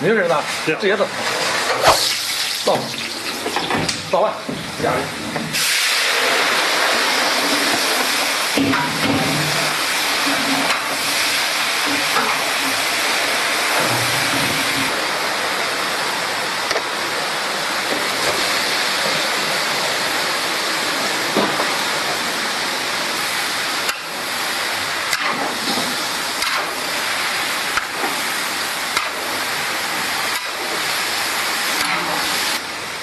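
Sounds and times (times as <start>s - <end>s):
food sizzling in a wok: 1.8s - 3.8s, 5.5s - 16.4s, 21.8s - 33.0s.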